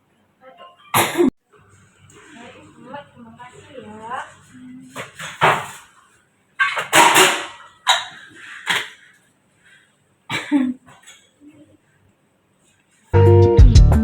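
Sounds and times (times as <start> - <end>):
woman coughing: 0.8 - 1.3, 10.3 - 11.0.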